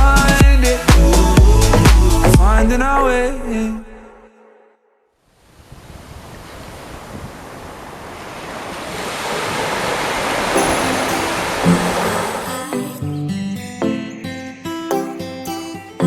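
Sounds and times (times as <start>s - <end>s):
music: 0.0s - 3.6s, 10.6s - 16.0s
even rushing noise: 5.7s - 12.9s.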